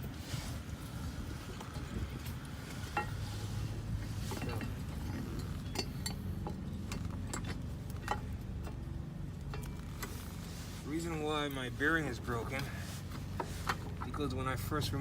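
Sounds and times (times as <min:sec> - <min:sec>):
metal tools clicking and clinking: 0:04.3 - 0:08.8.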